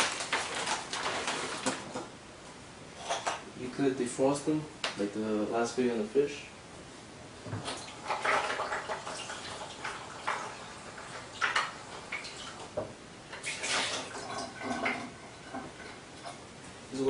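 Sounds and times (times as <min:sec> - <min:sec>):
tap water splashing in a sink: 0:07.6 - 0:15.1.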